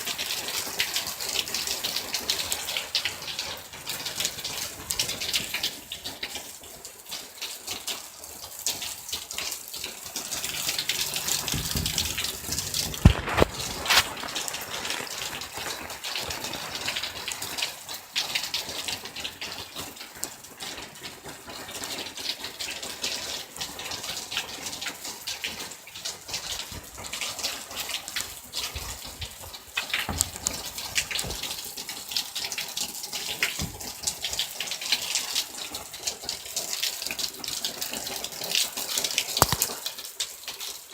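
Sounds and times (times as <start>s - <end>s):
heavy rain pouring: 0.0s - 40.6s
sharp knocks: 11.1s - 14.0s.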